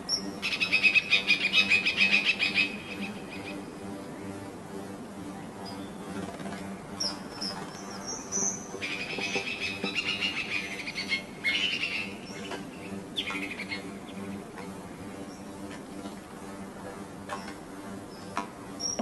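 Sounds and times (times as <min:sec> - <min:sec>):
small birds chirping: 0:00.0 - 0:04.0, 0:06.9 - 0:14.6, 0:15.2 - 0:15.6
steady low hum: 0:00.0 - 0:19.0.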